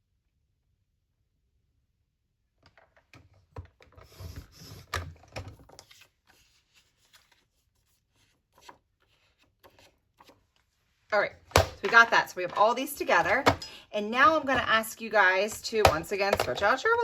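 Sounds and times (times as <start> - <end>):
paper rustling and sliding: 4.0 - 11.0.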